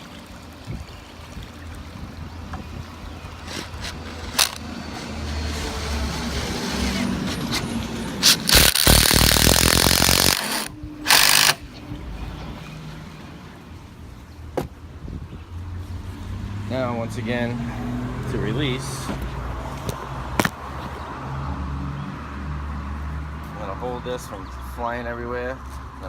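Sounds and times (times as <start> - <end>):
impact driver hammering rattle: 3.5 - 5.0, 8.2 - 11.6.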